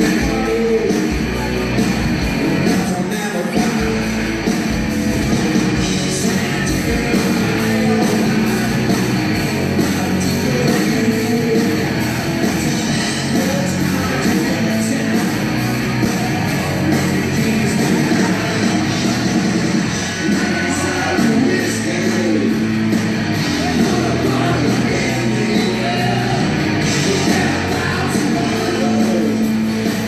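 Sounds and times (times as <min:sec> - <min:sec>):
hard rock band playing: 0:00.0 - 0:30.0.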